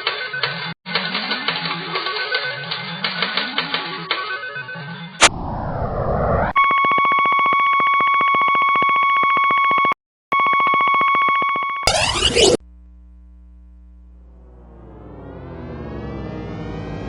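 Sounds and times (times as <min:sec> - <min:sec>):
low hum: 0:05.2 - 0:06.6, 0:11.9 - 0:17.0
electronic buzzer tone: 0:06.6 - 0:12.6.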